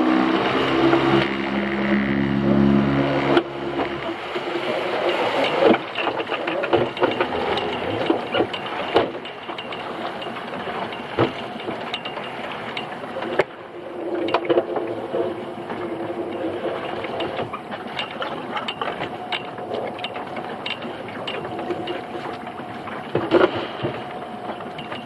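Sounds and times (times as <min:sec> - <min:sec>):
boat engine hum: 0:00.0 - 0:25.0
mechanical clatter and ratcheting: 0:04.8 - 0:22.6.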